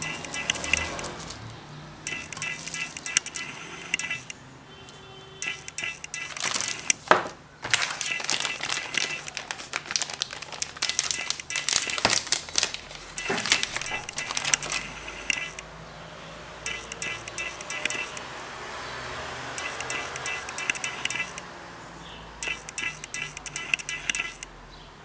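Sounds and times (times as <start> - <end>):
crinkling scraping and clicking: 0.0 - 15.7.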